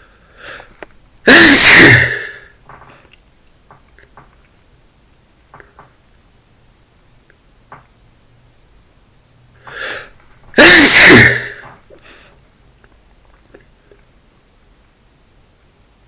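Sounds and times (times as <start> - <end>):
man sneezing: 1.3 - 2.5, 9.7 - 11.8.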